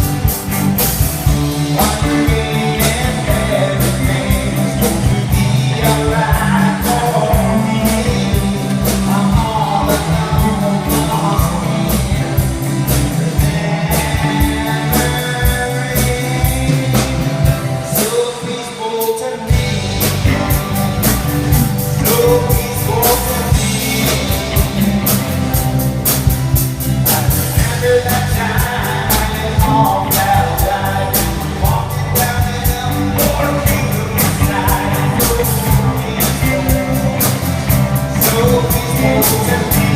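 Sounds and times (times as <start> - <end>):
drums keeping a beat: 0.0 - 39.9
live rock band playing: 0.0 - 39.9
person singing: 0.0 - 39.9.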